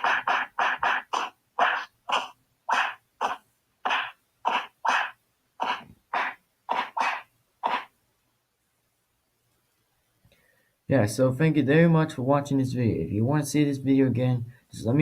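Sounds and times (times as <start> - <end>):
vocal punch sound effects: 0.0 - 7.9.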